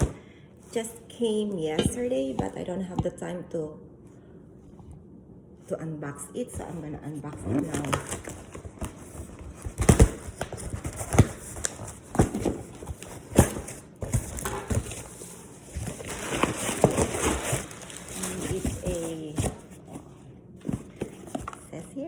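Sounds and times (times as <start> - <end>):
packaging rustling and crinkling: 7.5 - 21.6.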